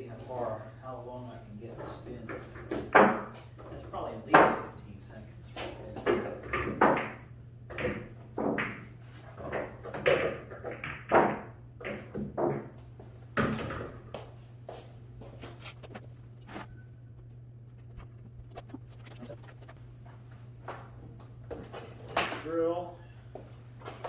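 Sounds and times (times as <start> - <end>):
low electrical hum: 0.0 - 24.0
handling scrapes rustles and knocks: 15.2 - 16.7.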